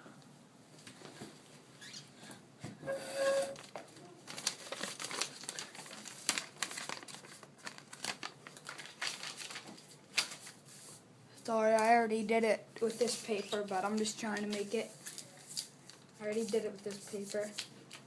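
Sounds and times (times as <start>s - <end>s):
short pitched tone: 2.8s - 3.6s
paper crinkling: 3.6s - 10.9s, 12.9s - 18.0s.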